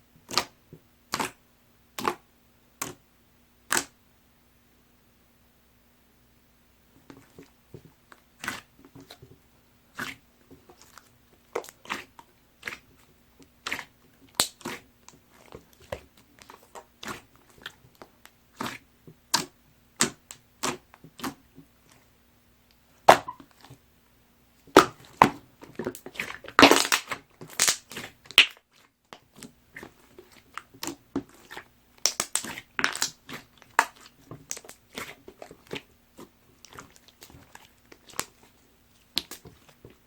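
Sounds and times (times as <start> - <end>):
slime squished by hand: 0.3 - 1.4, 3.7 - 4.0, 8.3 - 9.2, 9.9 - 22.1, 23.0 - 23.8, 24.7 - 40.0.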